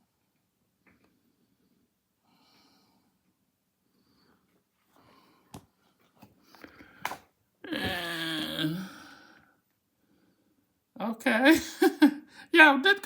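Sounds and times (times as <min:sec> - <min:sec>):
faint breaths: 0:01.0 - 0:07.3.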